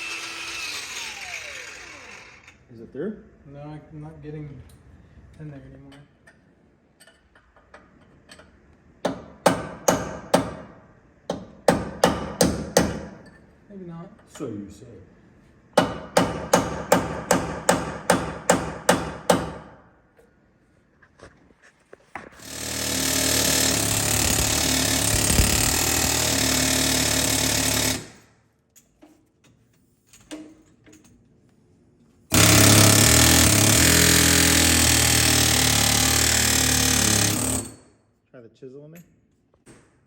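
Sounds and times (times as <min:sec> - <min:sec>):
pneumatic air hammer chiseling: 0:00.0 - 0:02.6, 0:22.4 - 0:28.3, 0:32.3 - 0:37.9.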